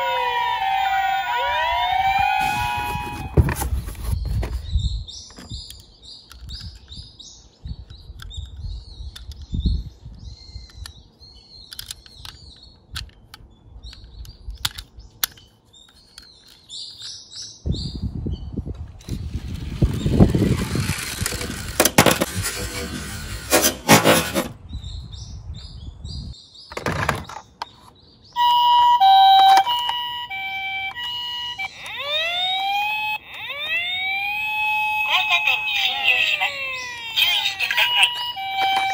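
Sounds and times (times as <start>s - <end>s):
birds chirping: 30.4s - 38.9s.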